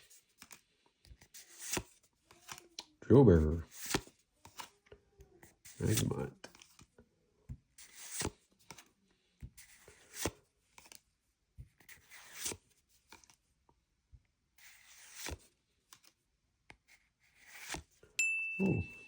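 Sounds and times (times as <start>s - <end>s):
trading cards swishing and snapping: 1.4s - 2.8s, 3.8s - 4.7s, 5.7s - 6.8s, 7.8s - 8.9s, 9.6s - 11.0s, 11.8s - 13.4s, 14.7s - 17.9s.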